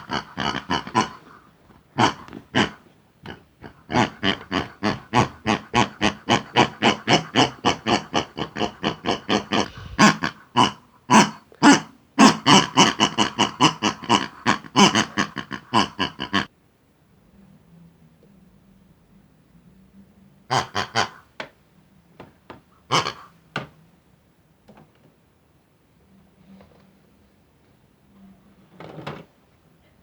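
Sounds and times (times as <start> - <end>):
pig grunting: 0.0 - 16.5, 20.5 - 21.3, 22.8 - 23.4.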